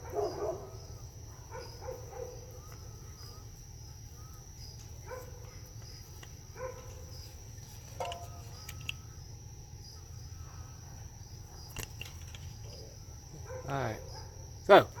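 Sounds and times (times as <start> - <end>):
faint dog barking: 0.0 - 3.1, 5.0 - 5.7, 6.5 - 7.2, 13.4 - 15.0
high insect trill: 0.0 - 15.0
low steady hum: 0.0 - 15.0.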